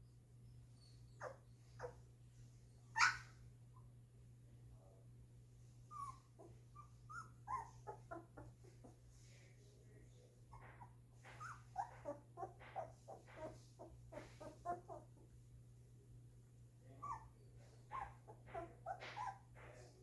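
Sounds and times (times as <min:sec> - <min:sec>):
puppies whimpering: 0:03.0 - 0:03.2, 0:05.9 - 0:09.0, 0:10.5 - 0:15.2, 0:17.9 - 0:19.6.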